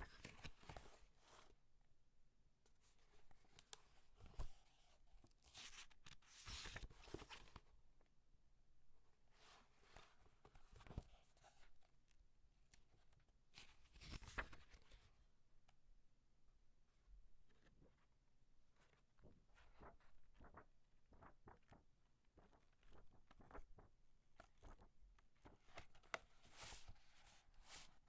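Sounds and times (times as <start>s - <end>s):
paper pages turning: 5.2s - 7.6s, 13.6s - 15.0s, 18.8s - 28.0s.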